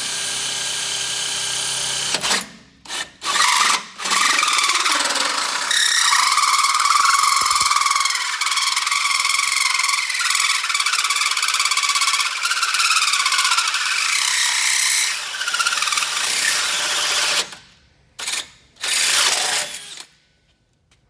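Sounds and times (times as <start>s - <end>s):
drill hole saw squealing through metal: 3.4s - 17.4s.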